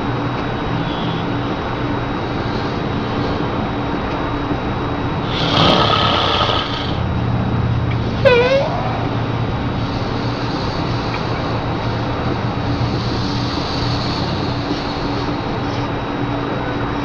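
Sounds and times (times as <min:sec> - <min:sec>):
low mechanical hum: 0:00.0 - 0:17.0
noisy burst: 0:05.2 - 0:07.1
high wavering squeal: 0:08.2 - 0:09.3.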